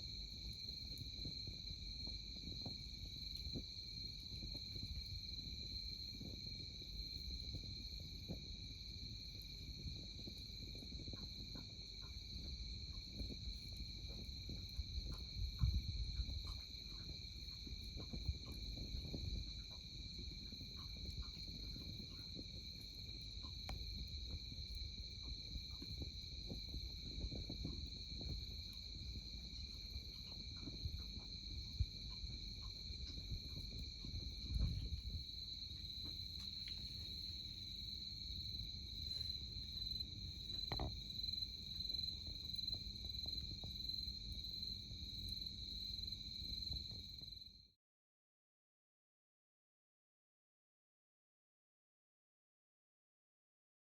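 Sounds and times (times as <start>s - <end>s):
campfire crackling: 0.0s - 47.2s
crickets chirring: 0.0s - 47.5s
soft low rumbles: 25.5s - 44.0s.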